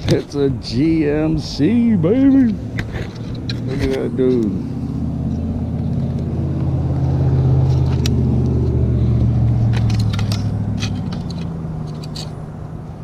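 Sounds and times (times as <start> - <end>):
engine running: 0.0 - 13.0.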